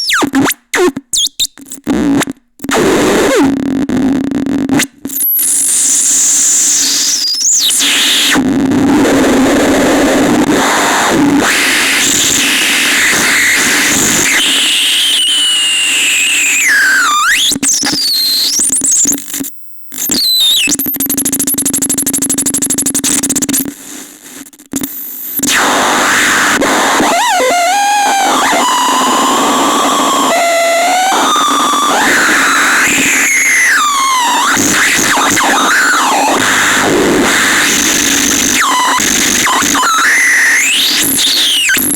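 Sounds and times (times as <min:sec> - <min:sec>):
harsh electronic static: 0:00.0 - 0:41.9.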